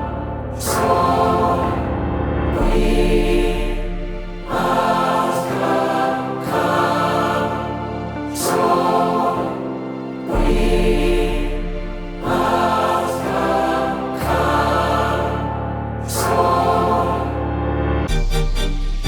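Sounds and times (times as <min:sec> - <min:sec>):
deep bass notes: 0:00.0 - 0:05.2
choir-like chords: 0:00.0 - 0:19.0.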